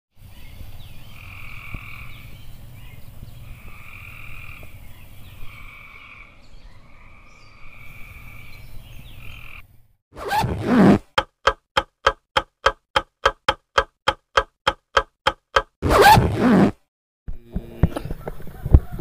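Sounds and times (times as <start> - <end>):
frogs croaking: 1.0 - 2.3, 3.4 - 9.8.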